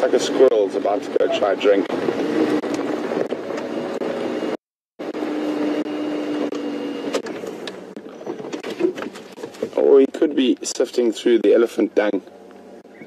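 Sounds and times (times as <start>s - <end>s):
vehicle engine humming: 0.0s - 13.0s.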